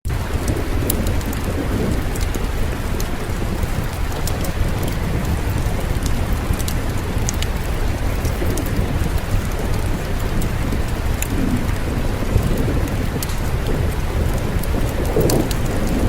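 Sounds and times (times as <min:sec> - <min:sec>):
sharp crackles and ticks: 0:00.0 - 0:16.0
steady rain: 0:00.0 - 0:16.0
constant low rumble: 0:00.1 - 0:16.0.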